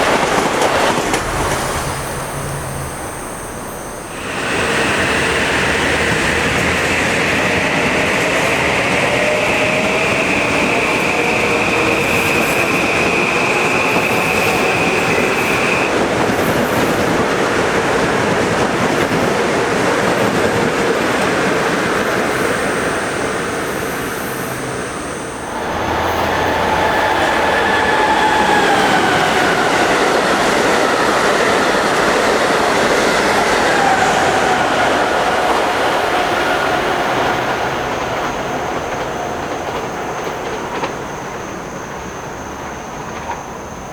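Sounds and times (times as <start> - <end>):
high wheel squeal: 0.0 - 17.4, 19.1 - 43.9
train wheels on rails: 0.0 - 43.9
whine sliding down in pitch: 0.3 - 7.0, 22.4 - 30.3.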